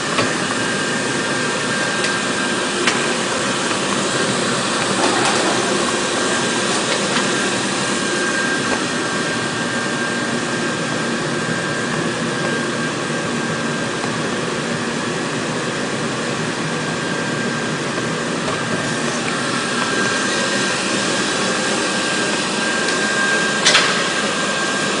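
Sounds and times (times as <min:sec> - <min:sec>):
cooker fan whirring: 0:00.0 - 0:25.0.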